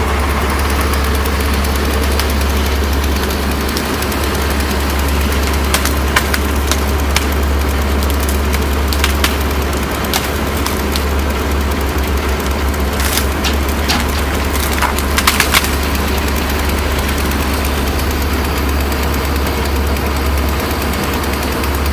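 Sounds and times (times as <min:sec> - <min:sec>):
heavy engine humming: 0:00.0 - 0:21.9
wood cracking and knocking: 0:04.8 - 0:07.4, 0:08.0 - 0:11.3, 0:12.1 - 0:16.2.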